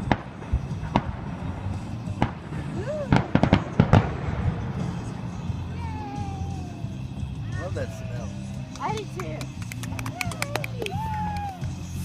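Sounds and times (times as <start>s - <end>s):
fireworks bangs: 0.0s - 5.6s.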